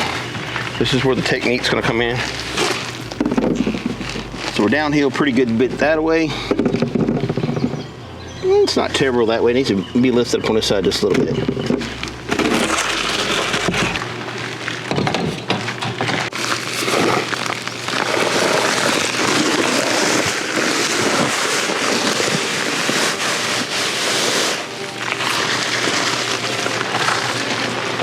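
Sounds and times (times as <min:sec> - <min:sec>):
dirt scraping and crackling: 0:00.0 - 0:07.9, 0:11.0 - 0:28.0
low hum: 0:00.0 - 0:15.2.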